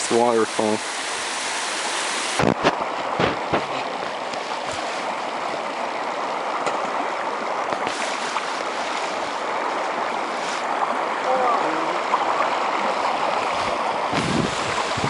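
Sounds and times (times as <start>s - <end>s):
stream rushing: 0.0s - 15.0s.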